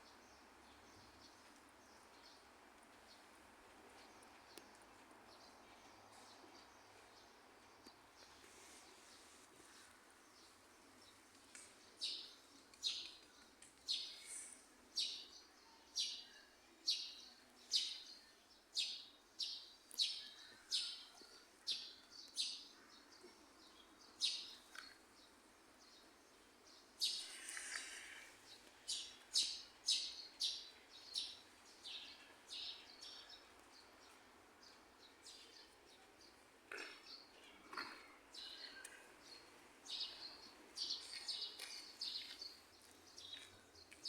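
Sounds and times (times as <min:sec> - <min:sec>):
rough bird call: 0:27.0 - 0:28.4.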